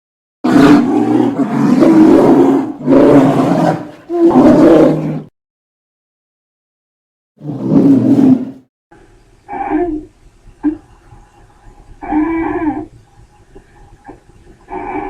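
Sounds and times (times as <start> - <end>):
cartoon bear roaring: 0.5 - 5.3, 7.4 - 8.6, 9.5 - 10.8.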